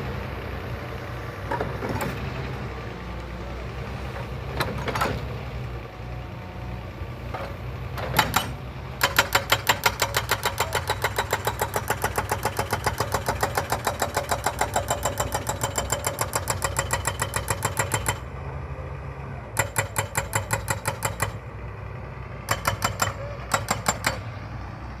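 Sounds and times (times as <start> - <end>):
engine humming: 0.0 - 25.0
jackhammer pounding stone: 8.2 - 18.2, 19.6 - 21.4, 22.5 - 24.3.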